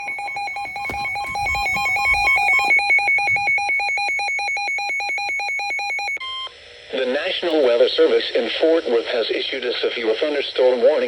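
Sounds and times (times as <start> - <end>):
rapid shrill alarm beeps: 0.0 - 6.2.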